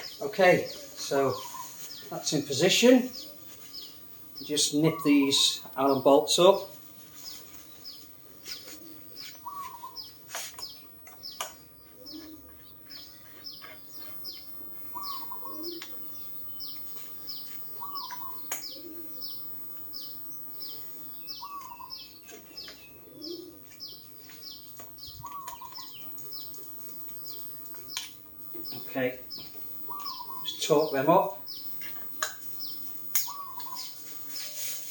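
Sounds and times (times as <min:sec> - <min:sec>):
birds chirping: 0:00.0 - 0:34.9
lower bird call: 0:08.5 - 0:10.7, 0:11.9 - 0:26.6, 0:28.6 - 0:30.6, 0:32.6 - 0:34.8.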